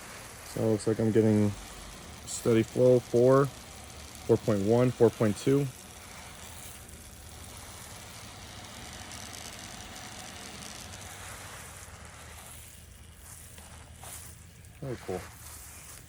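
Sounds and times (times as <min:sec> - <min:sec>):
water running from garden hose: 0:00.0 - 0:16.0.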